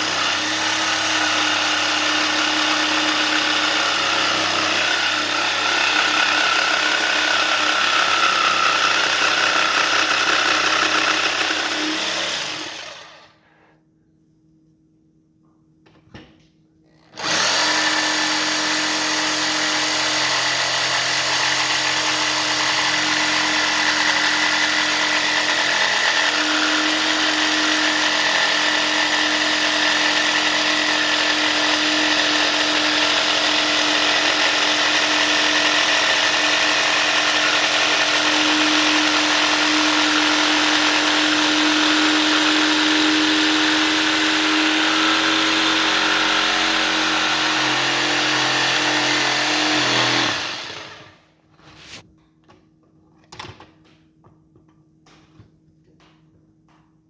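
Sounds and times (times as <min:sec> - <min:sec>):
power saw running: 0:00.0 - 0:13.4, 0:17.0 - 0:51.2.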